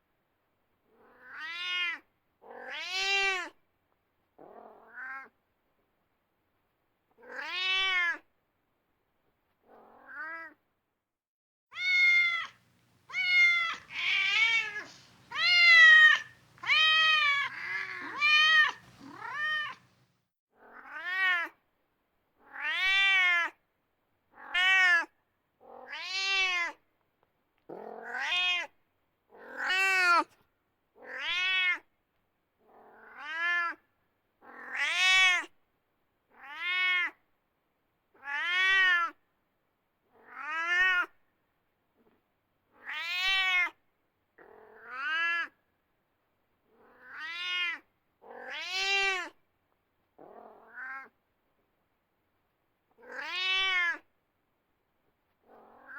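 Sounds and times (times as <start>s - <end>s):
cat meowing: 1.0s - 2.0s, 7.2s - 8.2s, 11.7s - 19.9s, 46.9s - 47.8s, 48.4s - 49.4s, 53.0s - 54.1s.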